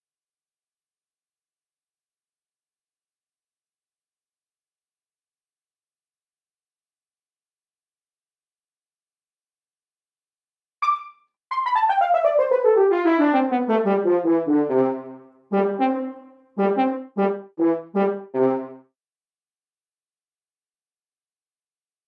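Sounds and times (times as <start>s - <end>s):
sampled brass notes: 10.8s - 18.8s.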